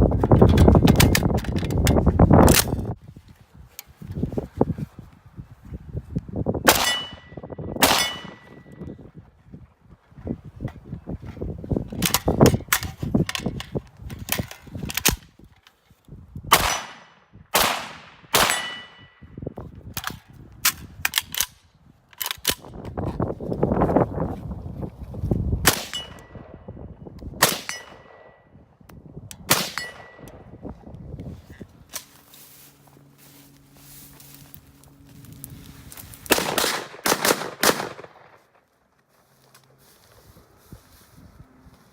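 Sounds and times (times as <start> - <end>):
rifle metallic clicks and clanks: 0.2 - 3.0, 11.2 - 15.9, 19.9 - 23.2, 25.7 - 26.4, 27.4 - 30.6, 31.9 - 32.2.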